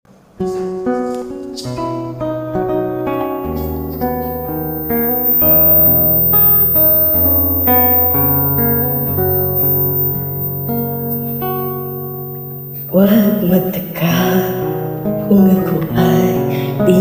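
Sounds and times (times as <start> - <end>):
acoustic guitar: 0.1 - 17.0
bass line: 3.1 - 13.0.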